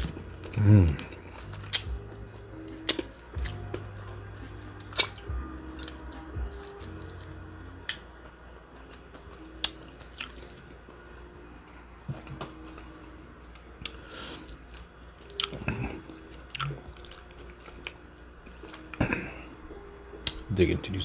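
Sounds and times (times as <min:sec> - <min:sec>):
chewing and biting chicken wing: 0:04.8 - 0:08.0.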